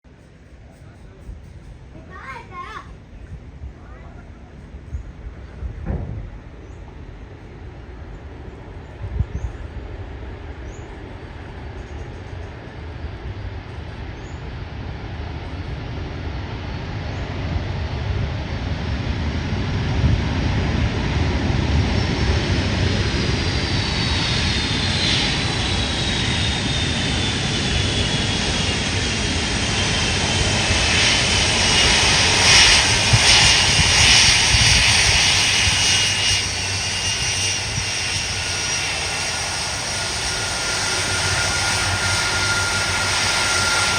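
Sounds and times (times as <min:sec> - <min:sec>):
high jet engine whine: 0:00.1 - 0:43.9
jet engines roaring: 0:00.1 - 0:43.9.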